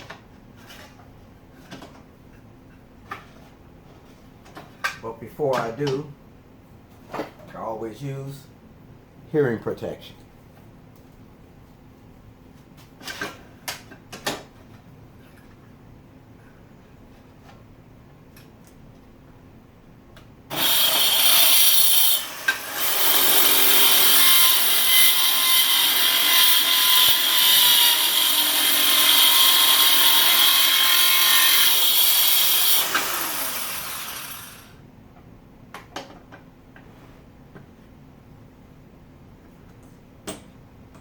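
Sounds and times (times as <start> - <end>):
circular saw cutting wood: 20.5 - 34.8.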